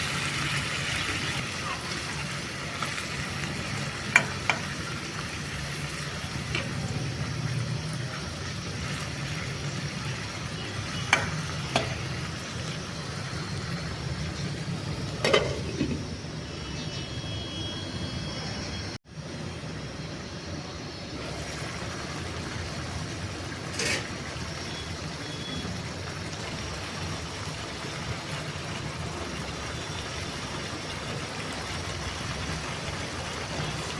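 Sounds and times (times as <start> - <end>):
chicken sizzling in a pan: 0.0 - 15.8, 19.6 - 33.9.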